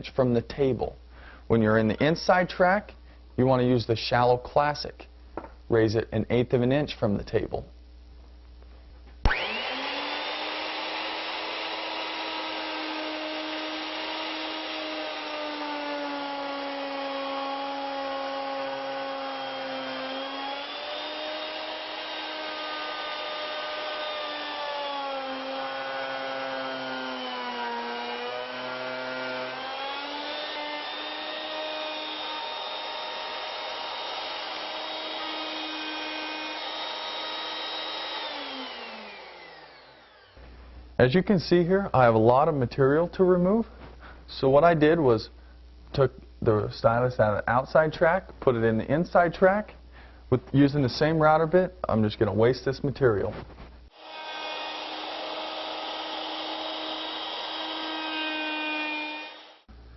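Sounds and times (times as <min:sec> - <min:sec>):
router cutting wood: 0:09.3 - 0:40.4, 0:53.9 - 0:59.7.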